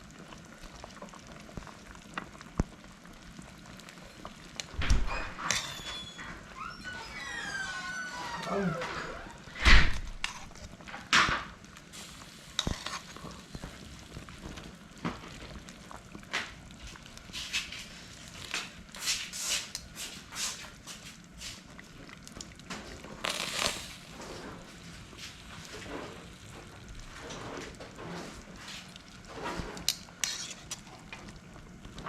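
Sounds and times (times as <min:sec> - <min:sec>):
utensils scraping dishes: 0:29.3 - 0:30.8.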